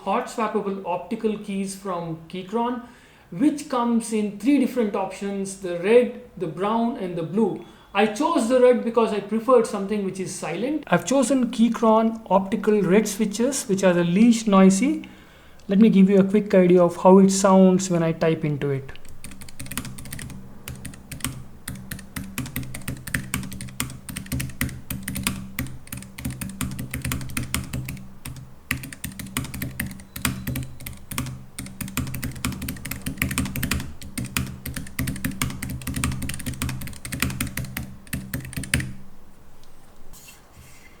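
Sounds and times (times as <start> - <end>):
fast typing on mechanical keyboard: 19.1 - 39.0.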